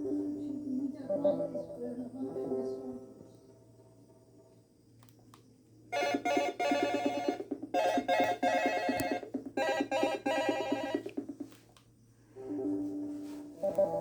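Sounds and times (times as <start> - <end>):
electronic alarm ringtone trilling: 5.9 - 11.2.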